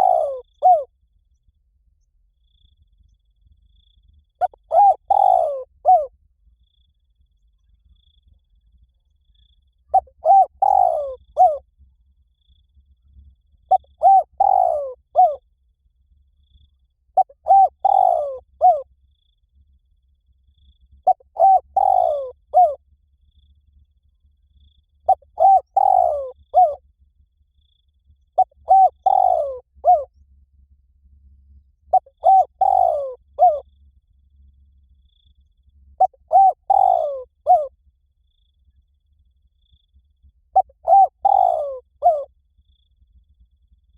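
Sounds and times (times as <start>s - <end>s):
dove cooing: 0.0s - 0.9s, 4.4s - 6.1s, 9.9s - 11.6s, 13.7s - 15.4s, 17.2s - 18.9s, 21.0s - 22.8s, 25.1s - 26.8s, 28.4s - 30.1s, 31.9s - 33.7s, 36.0s - 37.7s, 40.5s - 42.3s.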